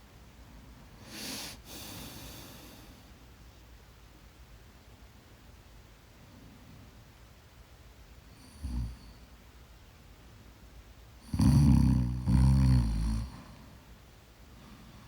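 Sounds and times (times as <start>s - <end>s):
person snoring: 11.3s - 13.6s.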